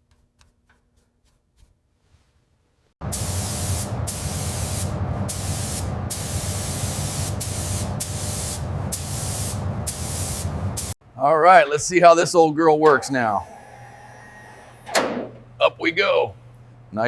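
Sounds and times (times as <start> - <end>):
steady low hum: 3.0 - 17.0
pressurised spray hissing: 3.1 - 11.0.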